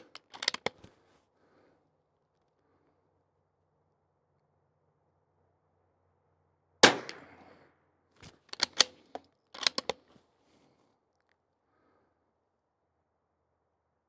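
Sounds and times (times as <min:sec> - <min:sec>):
rifle bolt clicking: 0:00.0 - 0:00.8, 0:08.5 - 0:10.0
rifle shot: 0:06.8 - 0:07.5.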